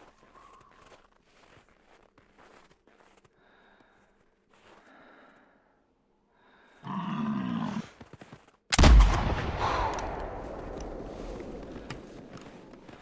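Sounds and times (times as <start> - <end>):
low grunting animal call: 6.8 - 7.9
rifle shot echoing: 8.8 - 11.7.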